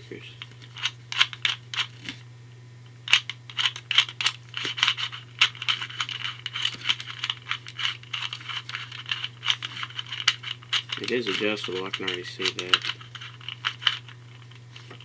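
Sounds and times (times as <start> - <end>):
speed cube clicking: 3.1 - 14.1.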